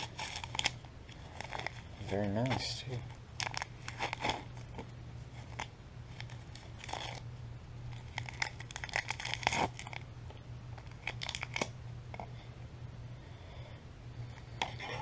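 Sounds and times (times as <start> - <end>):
paper packaging crinkling: 0.0 - 7.2, 7.9 - 10.0, 10.7 - 11.7.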